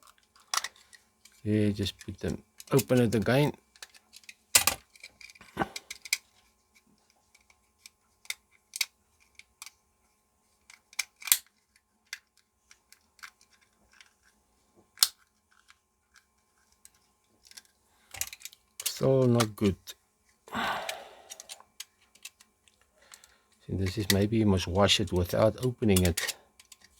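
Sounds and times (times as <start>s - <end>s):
sharp clicks and snaps of clock case: 10.7s - 14.1s.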